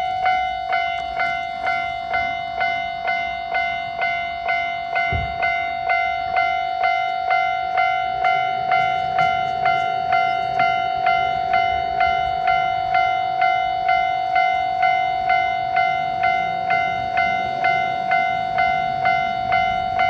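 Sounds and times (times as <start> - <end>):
level crossing warning bell: 0.0 - 20.0
low thump: 5.1 - 5.5.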